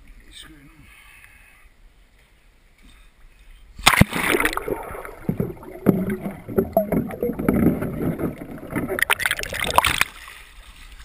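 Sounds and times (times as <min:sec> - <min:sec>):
water splashing and sloshing: 0:03.8 - 0:11.0.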